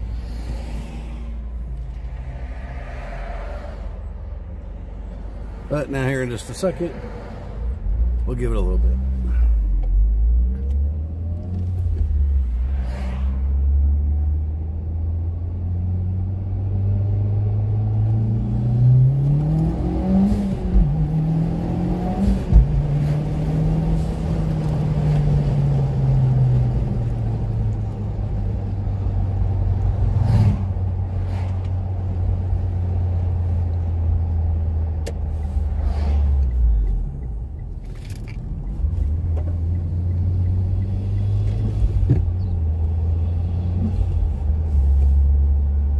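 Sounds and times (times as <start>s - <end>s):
car engine accelerating: 0.0s - 45.9s.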